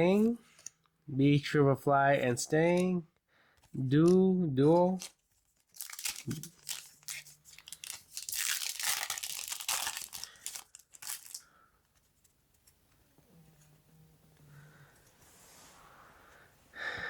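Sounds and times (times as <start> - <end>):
foil wrapper crinkling and tearing: 4.8 - 11.6.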